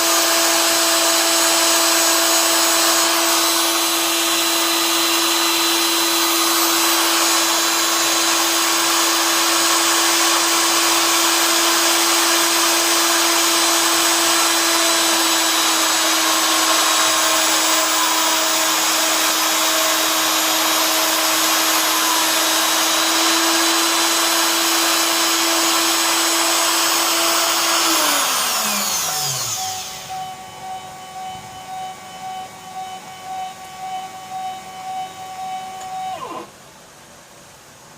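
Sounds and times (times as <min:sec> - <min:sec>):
motor spinning down: 0:00.0 - 0:36.5
spindle motor running at high speed: 0:00.0 - 0:36.5
quiet pulsing machine: 0:25.5 - 0:36.6.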